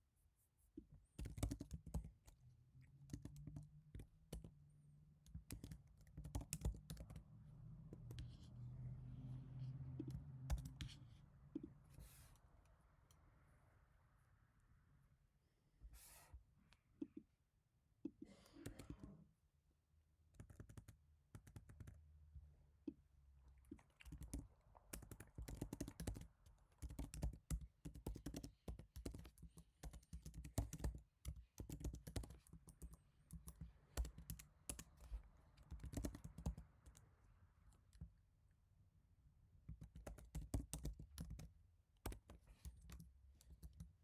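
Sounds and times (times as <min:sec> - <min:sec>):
soft keyboard typing: 0:01.1 - 0:08.7, 0:09.6 - 0:11.7, 0:18.1 - 0:19.2, 0:20.3 - 0:22.1, 0:23.7 - 0:37.1, 0:39.7 - 0:44.0.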